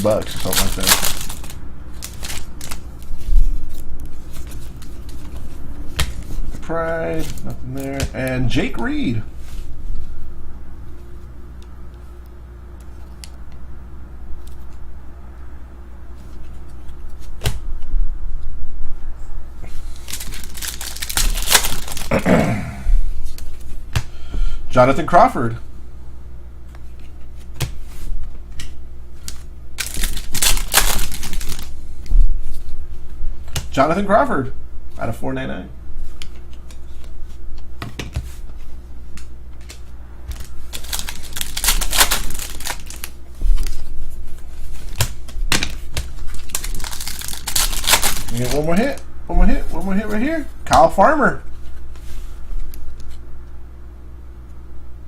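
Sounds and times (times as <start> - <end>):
foil wrapper crinkling and tearing: 0.0 - 3.9, 19.8 - 22.2, 29.2 - 31.8, 40.3 - 43.8, 44.8 - 49.0
card packs rustling: 0.0 - 9.6, 19.6 - 22.2, 29.2 - 31.8, 39.6 - 50.5
cards flicking and sliding: 3.7 - 6.4.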